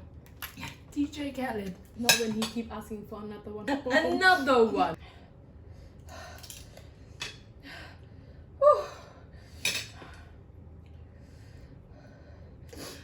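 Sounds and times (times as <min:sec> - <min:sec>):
cutlery clinking against dishes: 0:02.0 - 0:02.6.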